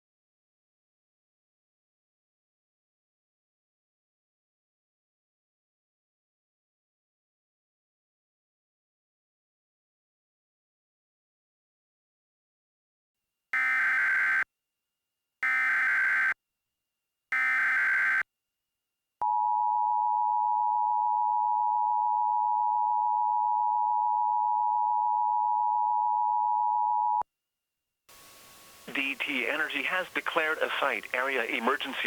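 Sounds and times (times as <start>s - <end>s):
harsh two-tone alarm: 13.6s - 14.5s, 15.4s - 16.4s, 17.3s - 18.2s.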